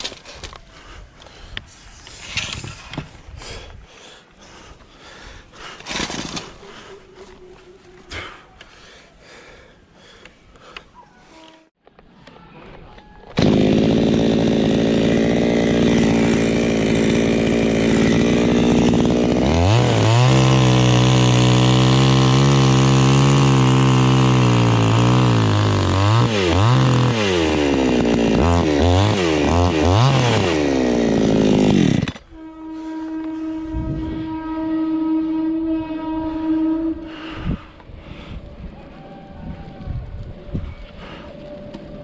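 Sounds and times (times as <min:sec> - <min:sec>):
two-stroke chainsaw running: 0:13.4 - 0:32.2.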